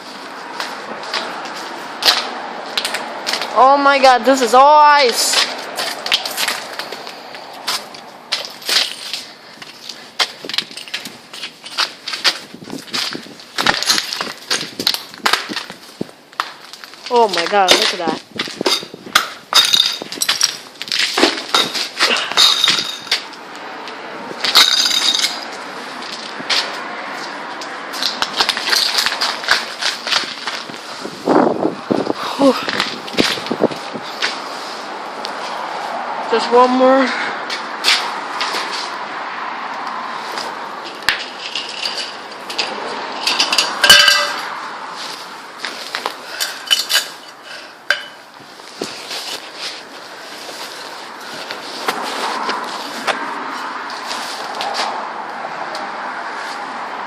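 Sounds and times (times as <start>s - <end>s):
gale wind rushing: 18.1s - 24.6s, 29.3s - 41.4s
metal pieces clinking: 19.5s - 20.6s, 22.4s - 23.2s, 24.4s - 25.4s, 43.2s - 44.4s, 46.4s - 48.2s
loud ringing metal clang: 43.8s - 44.5s.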